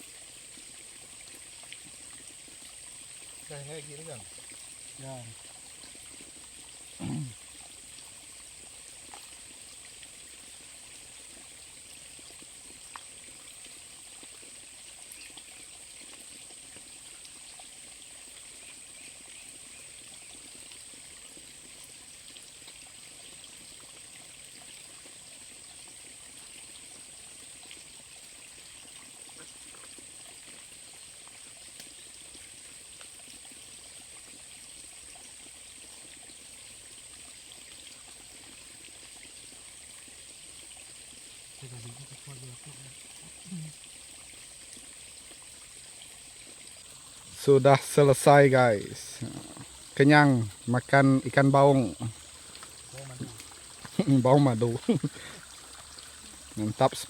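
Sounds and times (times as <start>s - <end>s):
running water: 0.0s - 57.0s
high-pitched hiss: 3.2s - 4.3s, 7.0s - 7.4s, 41.6s - 43.9s, 46.8s - 57.0s.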